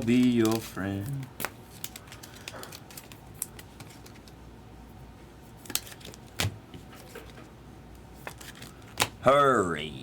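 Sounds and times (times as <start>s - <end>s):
cards rustling: 0.0s - 4.4s, 5.5s - 7.5s, 8.2s - 9.2s.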